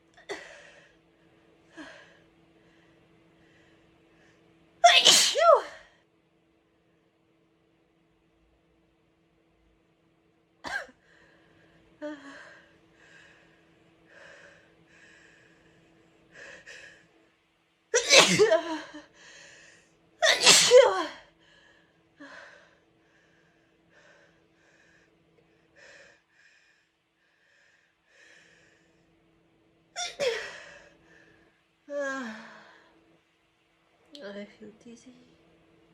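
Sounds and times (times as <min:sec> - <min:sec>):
soft breaths: 0:00.3 - 0:04.7, 0:11.0 - 0:17.4, 0:19.1 - 0:20.1, 0:21.3 - 0:29.6, 0:30.3 - 0:33.4
person sneezing loudly: 0:04.8 - 0:05.7, 0:18.0 - 0:18.7, 0:20.2 - 0:21.1.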